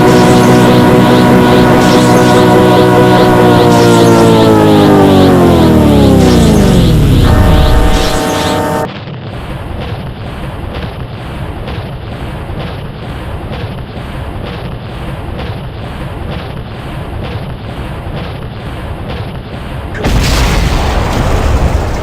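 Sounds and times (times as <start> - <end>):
synthetic zapping rumble: 0.0 - 8.9, 20.0 - 22.0.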